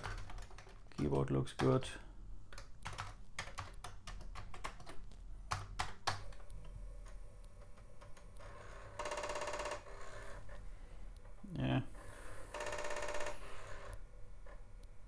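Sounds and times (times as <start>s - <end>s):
keyboard keys clicking: 0.0s - 1.8s, 2.5s - 8.4s.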